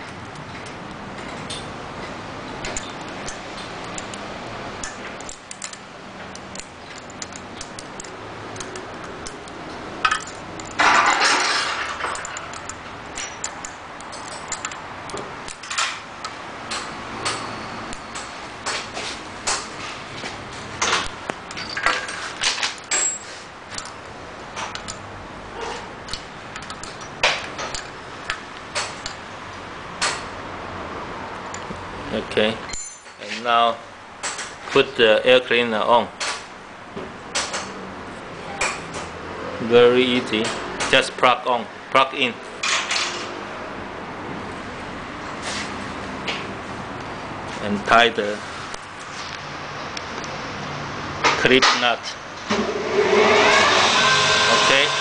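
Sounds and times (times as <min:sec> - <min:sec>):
metal tools clinking: 0:04.8 - 0:16.1, 0:20.8 - 0:29.2, 0:32.7 - 0:33.5
rustling scrape: 0:23.1 - 0:23.5.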